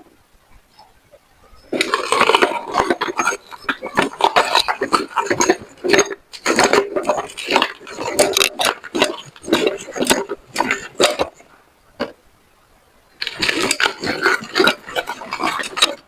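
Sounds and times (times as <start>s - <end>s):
meat grinder crunching pepper: 1.8s - 11.4s, 13.2s - 16.0s.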